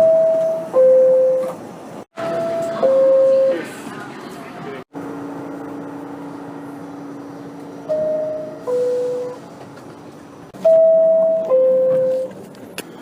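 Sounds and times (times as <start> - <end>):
two-note door chime: 10.6 - 12.3.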